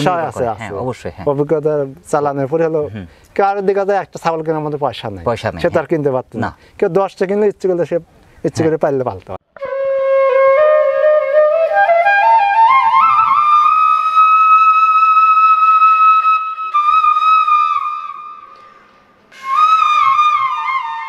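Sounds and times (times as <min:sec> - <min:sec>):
flute melody: 0:09.6 - 0:18.6, 0:19.3 - 0:21.0.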